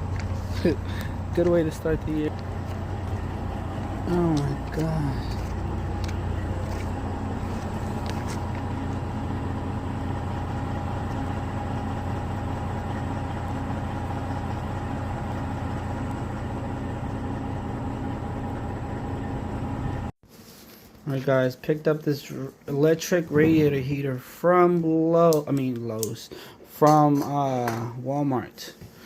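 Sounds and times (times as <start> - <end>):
low mechanical hum with tones: 0.0 - 20.6, 22.3 - 24.2.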